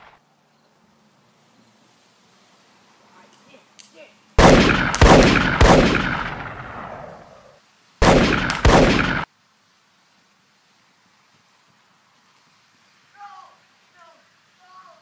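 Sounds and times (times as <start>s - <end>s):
gunshots echoing: 4.4s - 9.3s.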